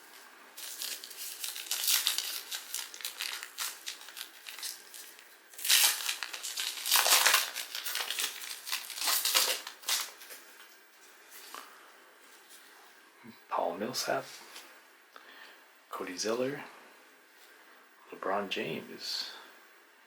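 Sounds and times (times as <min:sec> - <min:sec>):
foil wrapper crinkling: 0:00.6 - 0:10.5.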